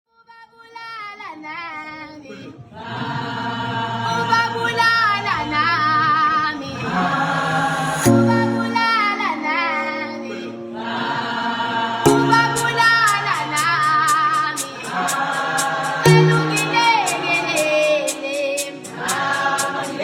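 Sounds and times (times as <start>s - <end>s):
person singing with vibrato: 4.1s - 20.0s
background music: 6.8s - 20.0s.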